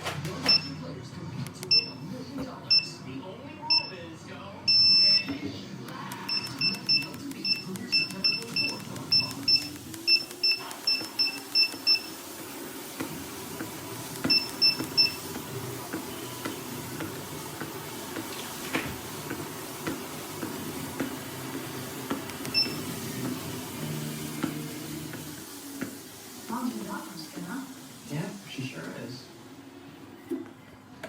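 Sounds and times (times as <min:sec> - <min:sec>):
treadmill motor hum: 0:00.0 - 0:31.0
short high beeps: 0:06.3 - 0:12.2.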